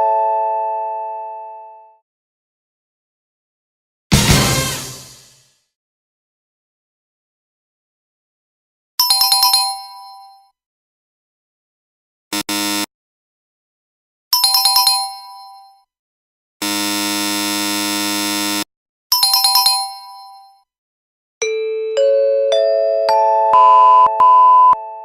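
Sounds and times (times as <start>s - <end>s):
buzzer blast: 4.1s - 5.4s, 12.4s - 12.9s, 16.6s - 18.7s.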